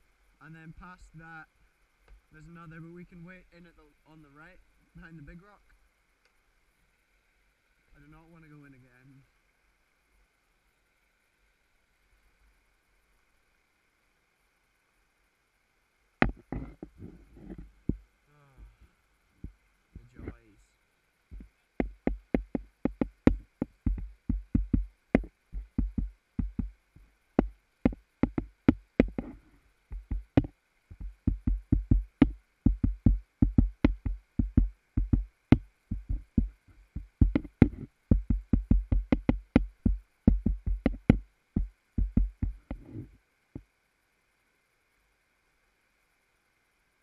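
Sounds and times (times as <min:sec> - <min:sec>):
faint high buzz: 0:00.0 - 0:47.0
sharp knocks with thuds: 0:16.2 - 0:18.0, 0:21.4 - 0:26.7, 0:27.4 - 0:43.1.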